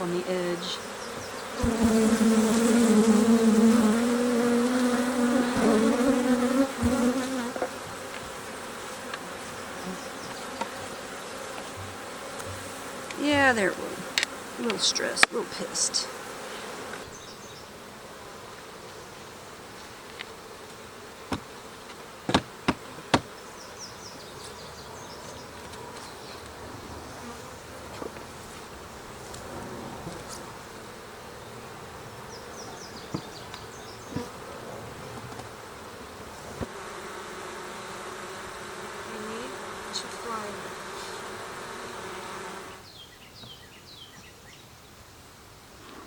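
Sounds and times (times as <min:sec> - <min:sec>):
honey bees buzzing: 0:00.0 - 0:44.1
sharp knocks: 0:22.3 - 0:23.3.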